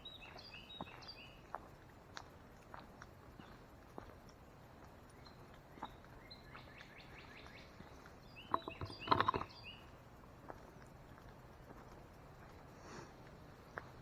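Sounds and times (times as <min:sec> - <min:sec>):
faint outdoor background: 0:00.0 - 0:14.0
birds chirping: 0:05.2 - 0:09.9.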